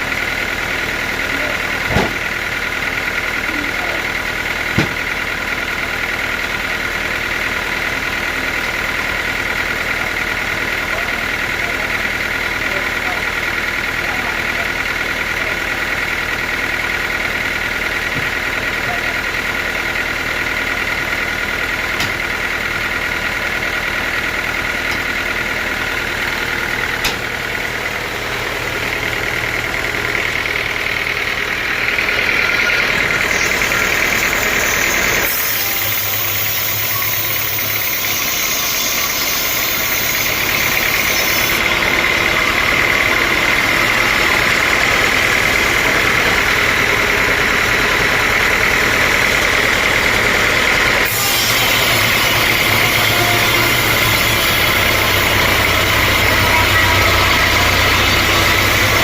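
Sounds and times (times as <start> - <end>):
sawmill machinery hum and whine: 0.0 - 59.0.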